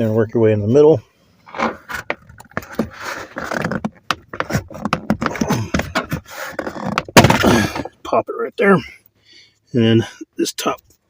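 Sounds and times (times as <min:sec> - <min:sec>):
plastic panel rattling: 0:01.5 - 0:07.9.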